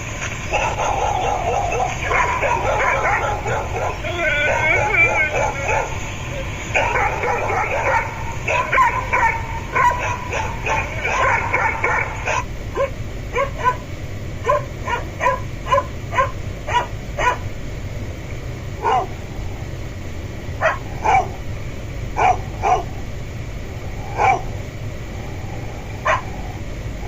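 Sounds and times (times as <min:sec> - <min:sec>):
dog barking: 0:00.5 - 0:17.5, 0:18.8 - 0:19.2, 0:20.6 - 0:21.4, 0:22.2 - 0:23.0, 0:24.1 - 0:24.6, 0:26.0 - 0:26.6.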